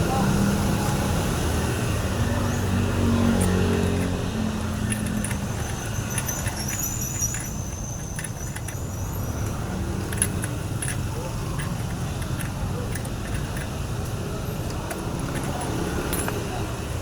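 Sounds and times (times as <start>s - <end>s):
faint clicks and rattles: 3.3s - 16.6s.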